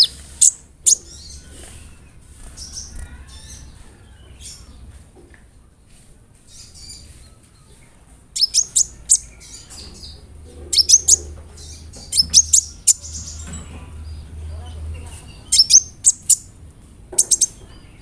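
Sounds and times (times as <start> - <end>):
bird high sharp chirps: 0.0 - 3.8, 8.4 - 13.4, 15.4 - 16.5, 17.2 - 17.9
faint bird calls: 8.4 - 13.3.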